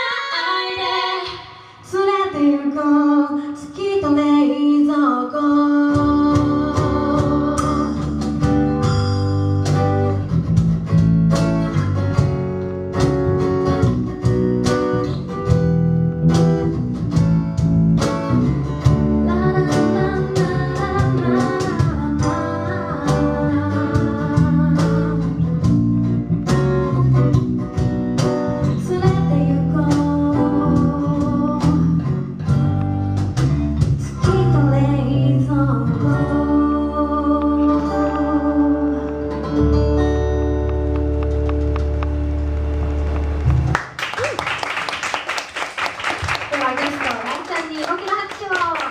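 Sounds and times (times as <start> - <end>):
woman singing: 0.0 - 8.3, 19.2 - 25.5, 28.7 - 32.0, 34.0 - 39.3
bass: 0.0 - 48.9
guitar: 0.0 - 48.9.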